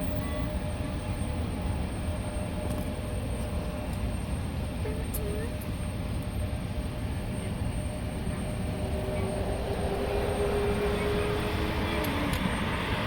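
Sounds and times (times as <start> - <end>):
faint humming tone: 0.0 - 13.0
low vehicle rumble: 5.5 - 13.0.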